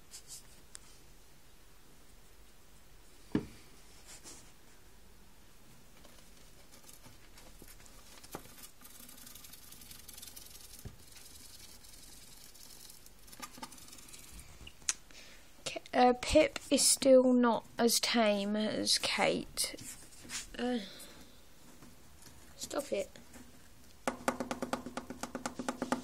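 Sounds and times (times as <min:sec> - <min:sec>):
gerbils scratching in sawdust: 0:06.2 - 0:14.5
sharp knocks: 0:24.0 - 0:26.0.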